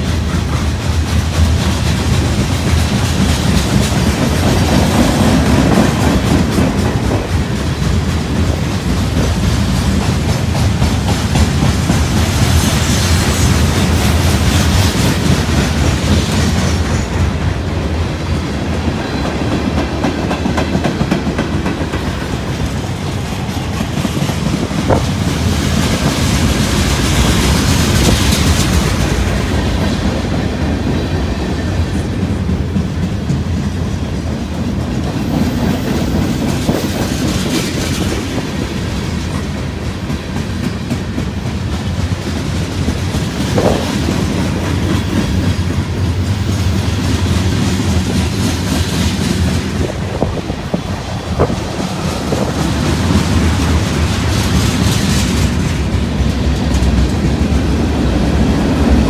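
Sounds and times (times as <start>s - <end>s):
train cars clattering over rails: 0.0s - 59.0s
train wheels squealing: 18.8s - 20.4s.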